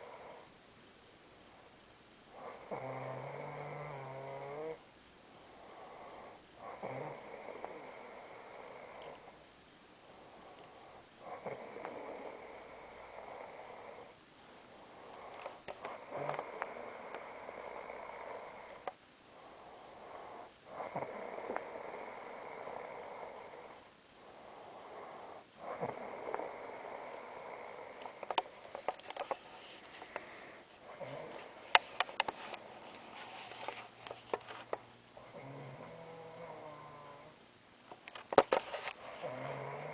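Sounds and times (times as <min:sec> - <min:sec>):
woman snoring: 0:02.4 - 0:04.9, 0:05.7 - 0:09.4, 0:11.2 - 0:14.2, 0:15.1 - 0:19.0, 0:20.0 - 0:23.9, 0:24.9 - 0:28.6, 0:30.9 - 0:32.4, 0:35.2 - 0:37.4, 0:39.2 - 0:39.9.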